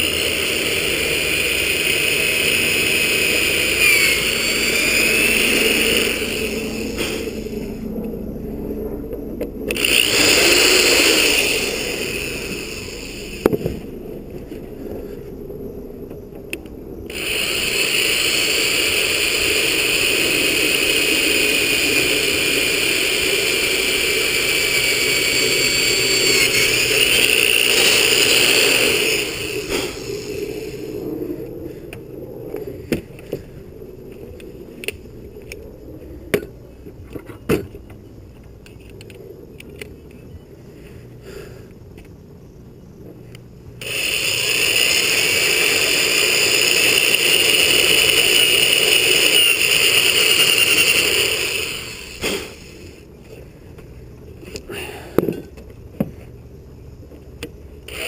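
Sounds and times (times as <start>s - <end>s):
small power tool whining: 0.0s - 8.3s, 9.2s - 13.9s, 16.2s - 30.9s, 43.3s - 53.5s, 57.2s - 58.0s.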